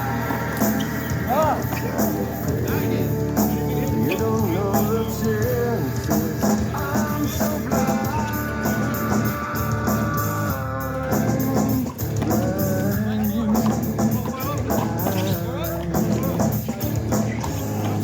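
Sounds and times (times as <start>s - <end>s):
song with sliding melodic notes: 0.0s - 18.0s.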